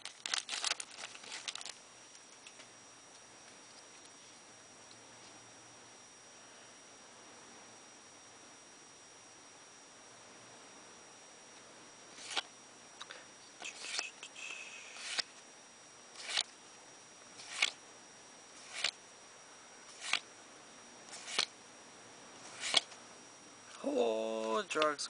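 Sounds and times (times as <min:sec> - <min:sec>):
cards snapping: 0:00.0 - 0:01.8, 0:12.2 - 0:12.5, 0:13.6 - 0:14.2, 0:14.9 - 0:15.3, 0:16.2 - 0:16.5, 0:17.4 - 0:17.8, 0:18.6 - 0:19.0, 0:19.9 - 0:20.3, 0:21.1 - 0:21.5, 0:22.5 - 0:23.0
papery rustle: 0:00.0 - 0:01.8.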